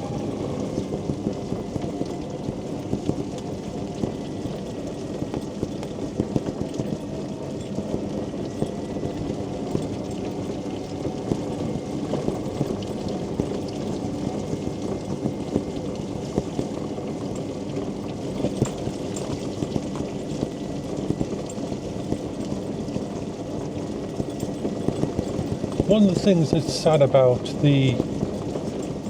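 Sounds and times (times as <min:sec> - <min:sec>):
mobility scooter motor whining: 0:00.0 - 0:21.0.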